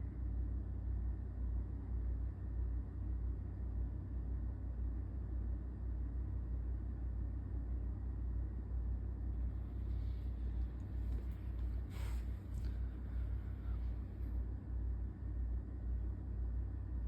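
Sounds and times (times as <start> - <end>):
steady low rumble: 0.0 - 17.0
brief scrape or rustle: 11.1 - 12.8.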